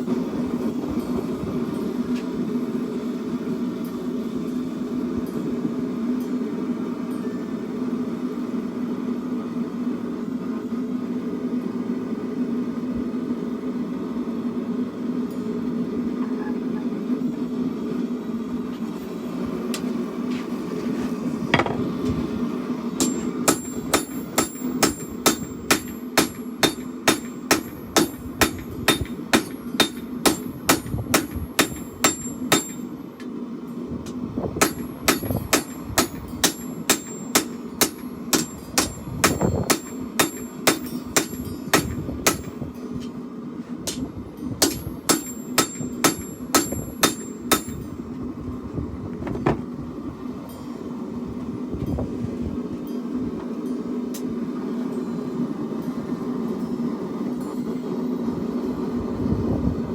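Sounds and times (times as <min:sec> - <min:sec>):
steady hum: 0:00.0 - 0:59.9
hammer striking steel on anvil: 0:23.0 - 0:33.3, 0:34.0 - 0:43.1, 0:43.8 - 0:48.0.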